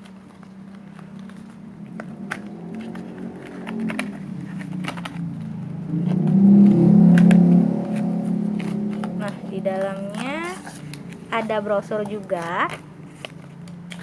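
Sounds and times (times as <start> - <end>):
low hum: 1.5 - 11.9.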